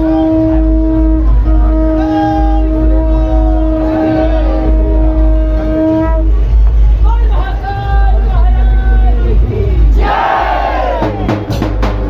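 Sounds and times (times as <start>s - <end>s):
loud processional music: 0.0s - 7.0s, 9.9s - 12.0s.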